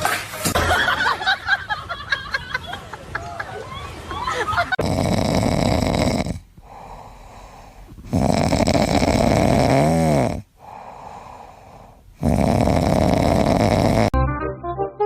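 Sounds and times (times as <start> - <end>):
loud snoring: 4.8 - 14.2
quiet breathing: 6.1 - 9.5, 10.1 - 14.2.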